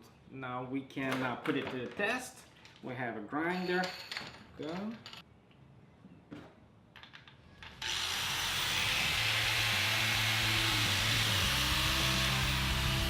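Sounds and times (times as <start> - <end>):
angle grinder running: 7.8 - 13.0.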